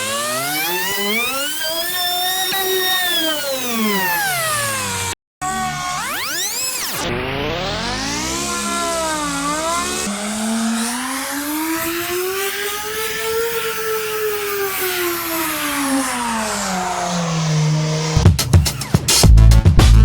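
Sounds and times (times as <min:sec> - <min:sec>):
pitched drone revving: 0:00.0 - 0:20.0
drum-heavy music: 0:18.2 - 0:20.0.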